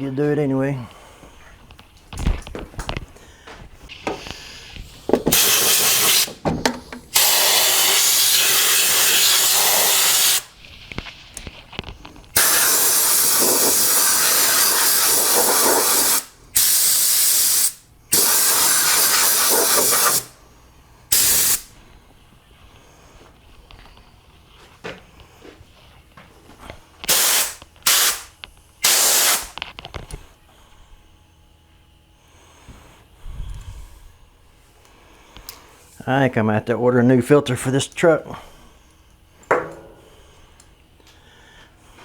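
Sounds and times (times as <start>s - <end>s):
compressed-air blow gun hissing: 4.2s - 6.4s, 7.1s - 10.5s, 12.3s - 20.4s, 21.1s - 21.8s, 27.1s - 29.6s.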